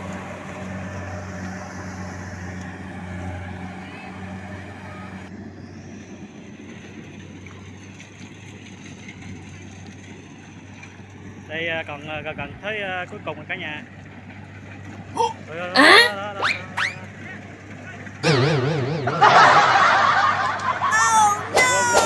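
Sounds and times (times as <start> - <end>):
combine harvester engine droning: 0.0 - 7.9, 16.2 - 22.0
higher-pitched noise: 18.2 - 22.0.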